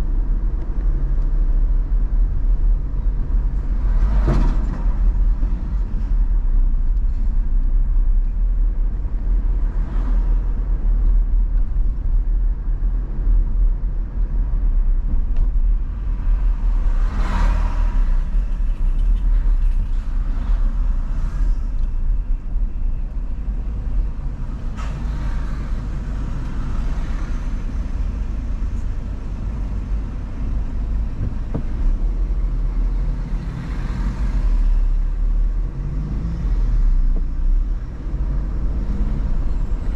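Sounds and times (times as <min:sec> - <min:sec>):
car road and engine noise: 0:00.0 - 0:39.9
passing traffic: 0:00.0 - 0:39.9.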